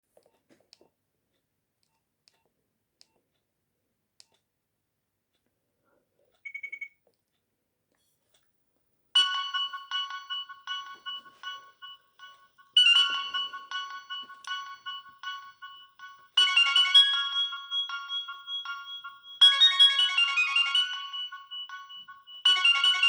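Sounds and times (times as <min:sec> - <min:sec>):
mobile phone ringtone: 0:09.2 - 0:23.0
rapid high beeps: 0:09.2 - 0:23.0.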